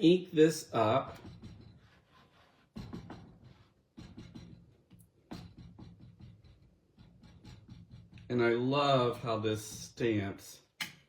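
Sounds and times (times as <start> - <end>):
rubber stamp tapping on ink pad: 1.1 - 1.9, 2.8 - 8.3.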